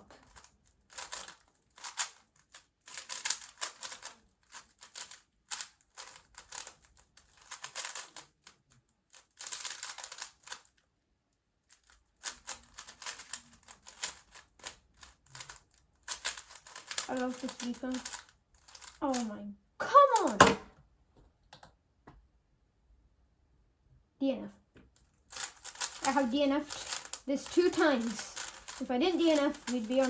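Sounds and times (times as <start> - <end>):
puzzle cube plastic clicking: 0.2 - 10.7, 11.8 - 19.3, 25.3 - 30.0.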